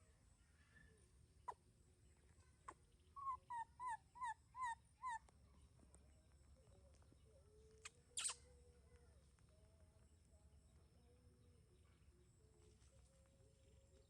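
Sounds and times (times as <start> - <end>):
baby monkey whimpering calls: 3.2 - 5.2, 8.2 - 8.4.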